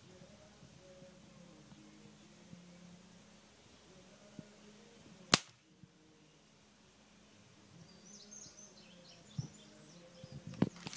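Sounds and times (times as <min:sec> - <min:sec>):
bb gun sharp crack: 0:05.3 - 0:05.6.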